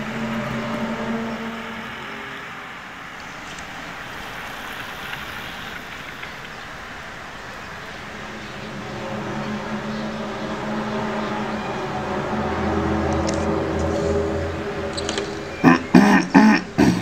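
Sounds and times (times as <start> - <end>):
rushing background noise: 0.0 - 17.0
low droning hum in the sky: 4.4 - 15.8.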